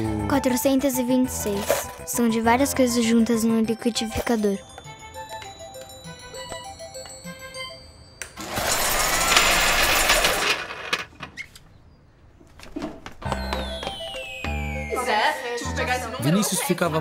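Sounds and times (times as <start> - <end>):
light tinkling music: 0.0 - 9.6, 13.3 - 17.0
kitchen blender whirring: 8.4 - 10.6.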